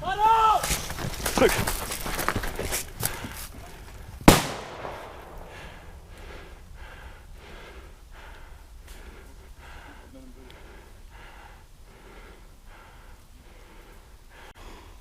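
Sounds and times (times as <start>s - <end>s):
heavy breathing: 1.2s - 4.2s, 5.0s - 15.0s
loud sharp bang: 4.3s - 5.8s.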